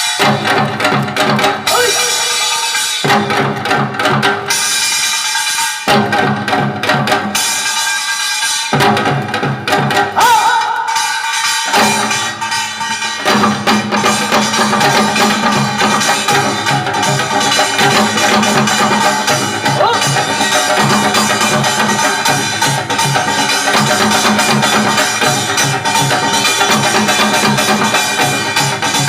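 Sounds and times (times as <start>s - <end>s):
steady drum beat: 0.0s - 29.0s.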